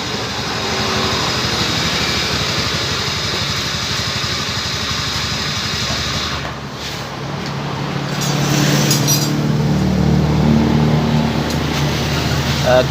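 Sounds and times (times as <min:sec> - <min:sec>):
scooter engine idling: 0:00.0 - 0:06.8.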